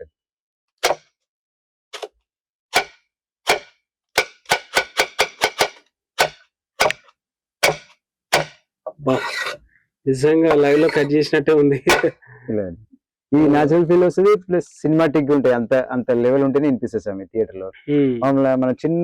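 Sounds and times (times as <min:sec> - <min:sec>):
sharp chopping sounds: 0:00.8 - 0:01.2, 0:02.0 - 0:08.6, 0:11.9 - 0:12.1.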